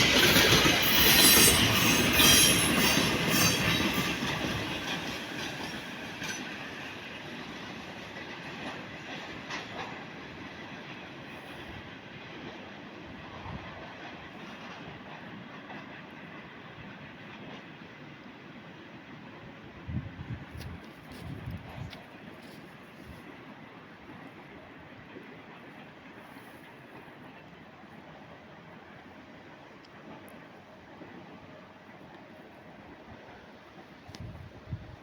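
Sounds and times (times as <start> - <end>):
train wheel squeal: 0.0 - 12.6
train wheels clattering: 0.0 - 17.8.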